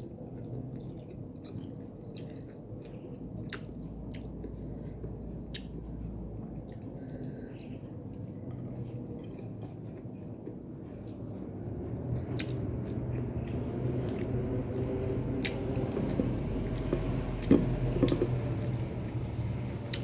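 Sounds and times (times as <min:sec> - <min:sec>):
person chewing food: 0:00.0 - 0:20.0.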